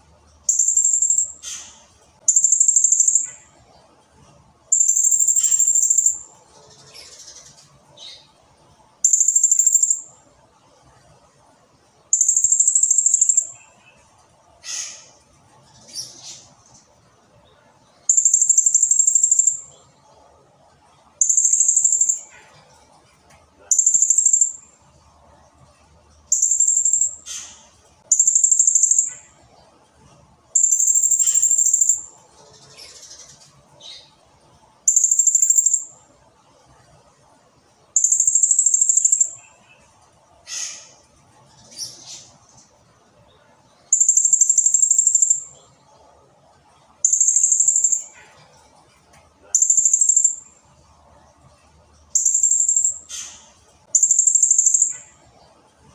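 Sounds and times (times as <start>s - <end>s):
parrot soft chirps: 0.5s - 3.5s, 4.7s - 7.4s, 21.2s - 22.6s, 26.3s - 29.4s, 30.6s - 32.1s, 38.0s - 39.6s, 43.9s - 45.6s, 49.6s - 50.5s, 52.2s - 55.2s.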